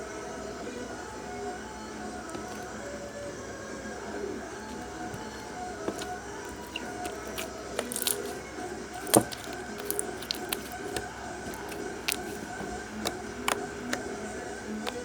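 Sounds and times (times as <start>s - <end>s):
slime sticky clicks and pops: 6.7s - 8.4s, 9.0s - 13.6s.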